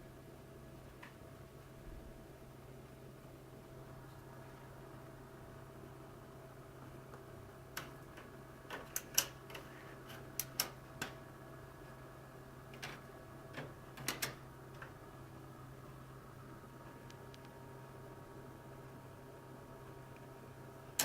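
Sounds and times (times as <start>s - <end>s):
computer parts clicking: 7.8s - 11.2s, 13.6s - 14.4s.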